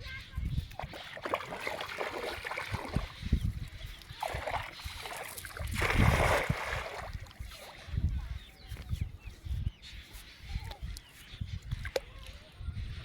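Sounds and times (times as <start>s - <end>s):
water splashing and sloshing: 0.6s - 8.2s.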